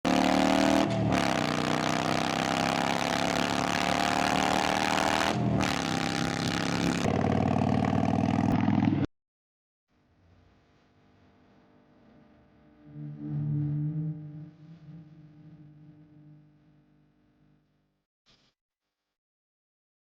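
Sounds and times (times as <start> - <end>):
motorcycle exhaust accelerating: 0.0 - 9.1, 12.2 - 16.8.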